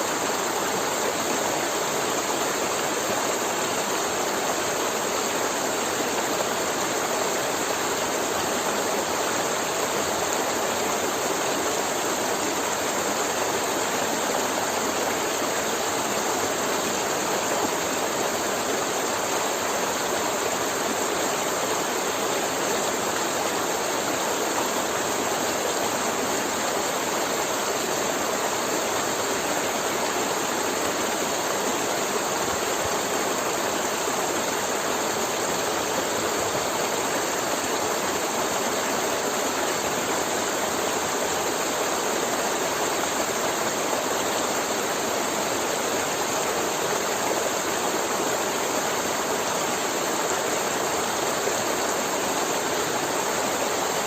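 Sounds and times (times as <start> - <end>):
river water flowing over rocks: 0.0 - 54.0.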